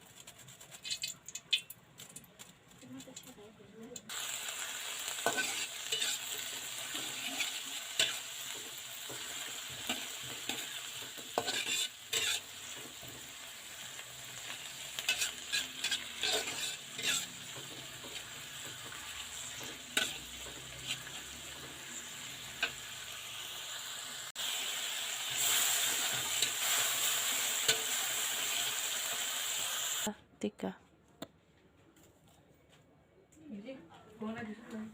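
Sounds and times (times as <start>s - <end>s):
food sizzling in oil: 0.1s - 1.7s, 4.1s - 30.1s
utensil scraping pan: 5.2s - 13.2s, 14.4s - 22.8s.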